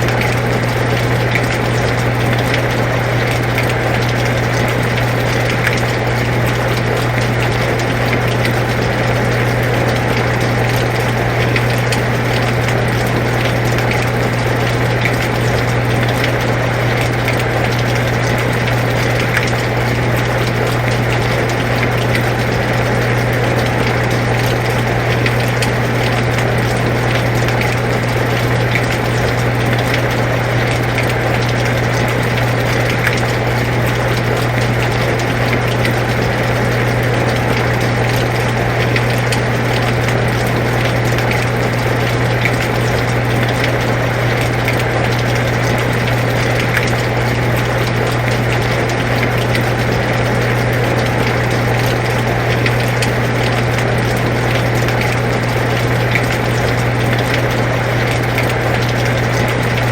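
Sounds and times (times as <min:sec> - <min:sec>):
air conditioner humming: 0:00.0 - 0:59.9
rain falling: 0:00.0 - 0:59.9.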